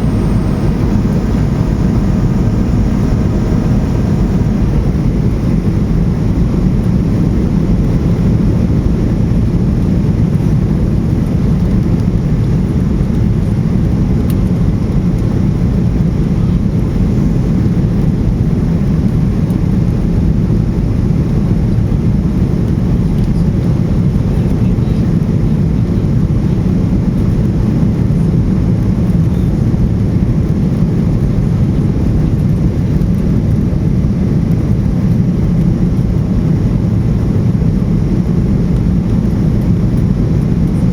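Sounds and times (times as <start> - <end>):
airliner cabin engine rumble: 0.0 - 40.9.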